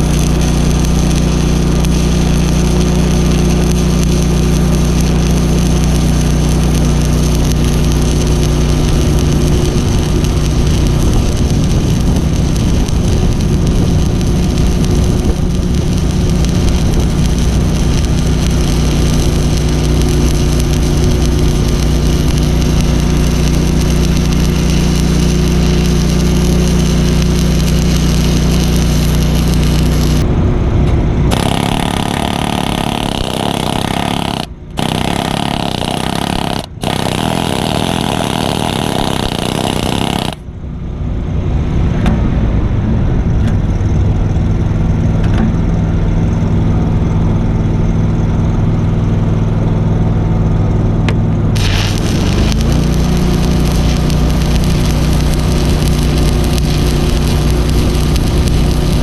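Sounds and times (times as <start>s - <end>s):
welding arc hissing and crackling: 0.0s - 30.2s, 31.3s - 40.5s, 51.4s - 59.0s
welding machine engine running: 0.0s - 30.3s, 31.2s - 40.6s, 43.9s - 59.0s
harsh loud noise: 0.0s - 40.6s, 51.5s - 59.0s.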